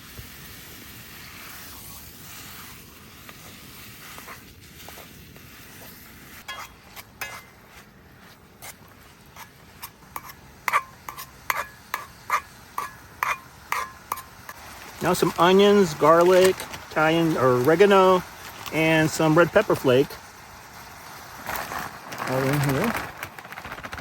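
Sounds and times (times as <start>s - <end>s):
sausage sizzling in a pan: 0.0s - 24.0s
utensil scraping and clinking pan: 6.4s - 19.2s.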